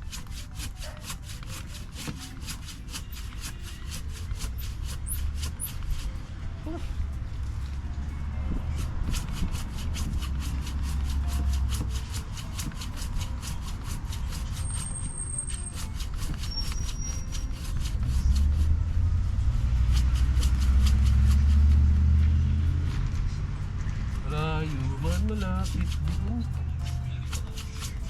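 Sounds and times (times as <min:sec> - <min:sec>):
hand saw cutting branch: 0:00.0 - 0:06.2, 0:08.7 - 0:18.7, 0:19.6 - 0:22.2, 0:24.2 - 0:28.0
low rumble: 0:18.5 - 0:25.0.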